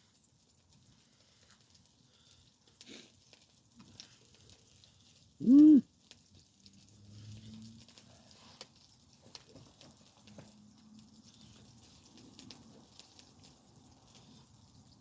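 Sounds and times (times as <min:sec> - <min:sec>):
person humming: 0:05.4 - 0:05.8.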